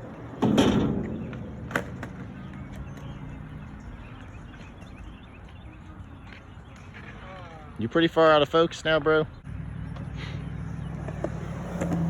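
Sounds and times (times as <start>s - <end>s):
skateboard rolling on concrete: 0.0s - 8.2s, 9.9s - 12.0s
sharp skateboard clack: 0.4s - 2.4s.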